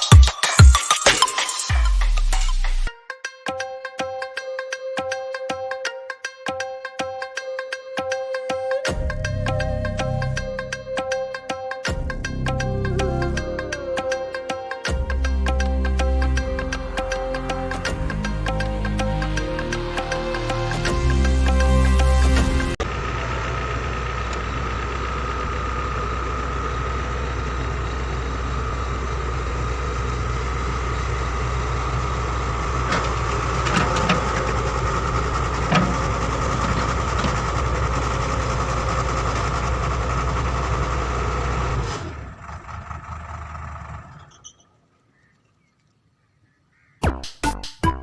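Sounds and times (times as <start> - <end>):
heavy machine engine running: 14.9 - 44.3.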